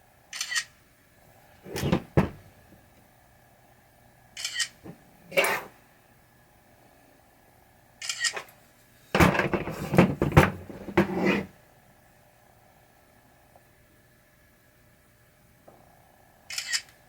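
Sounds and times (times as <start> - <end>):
camera shutter clicks: 0.3 - 0.7, 4.4 - 4.8, 8.0 - 8.5, 16.5 - 17.0.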